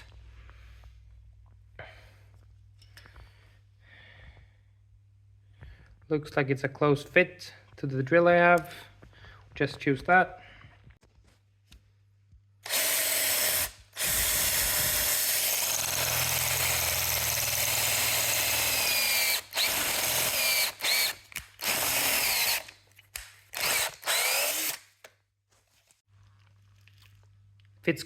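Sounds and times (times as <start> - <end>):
electric drill boring metal: 12.6 - 22.8, 23.6 - 24.9.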